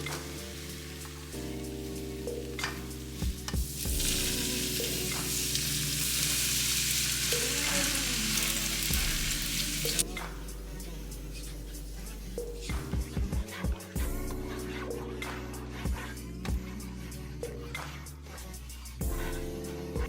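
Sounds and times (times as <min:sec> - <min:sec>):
food sizzling in a pan: 0:00.0 - 0:10.2
background music: 0:00.0 - 0:20.0.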